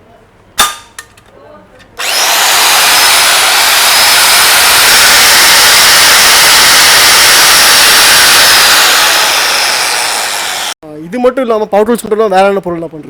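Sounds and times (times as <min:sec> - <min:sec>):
electric saw whining: 0:02.0 - 0:10.8.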